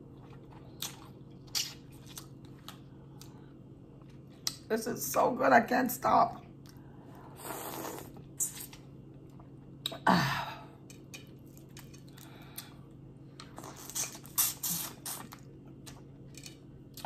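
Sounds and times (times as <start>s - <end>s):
chewing and wet smacking: 0.0s - 4.7s.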